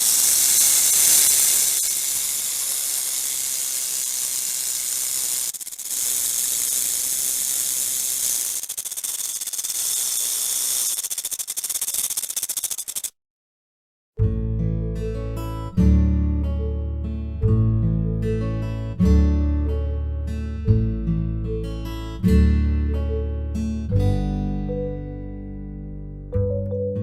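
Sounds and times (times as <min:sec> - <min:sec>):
snake hissing: 0:00.0 - 0:13.1.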